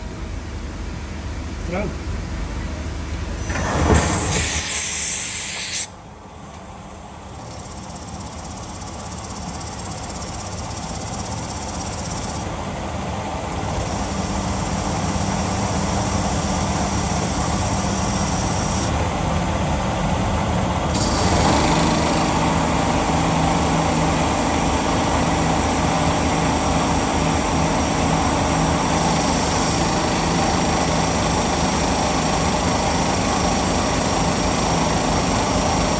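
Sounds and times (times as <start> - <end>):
loud hissing burst: 3.8 - 6.0
steady machine hum: 6.0 - 35.9
cnc machine cutting metal: 13.6 - 19.0, 20.9 - 35.9.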